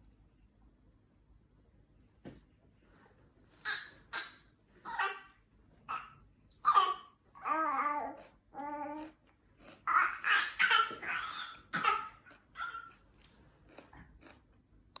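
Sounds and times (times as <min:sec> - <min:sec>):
breathy cough-like vocal bursts: 0:10.4 - 0:12.9.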